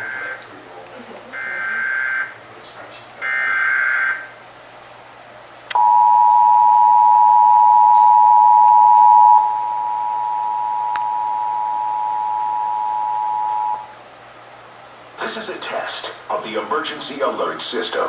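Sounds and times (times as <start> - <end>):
two-tone alert signal: 5.8 - 13.9.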